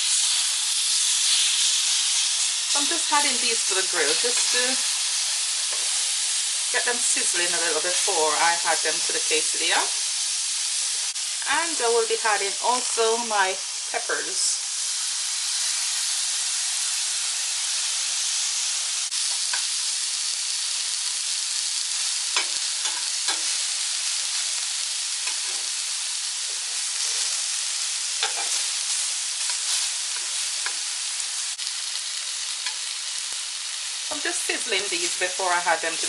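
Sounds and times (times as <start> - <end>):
vegetables sizzling on a grill: 0.0 - 36.0.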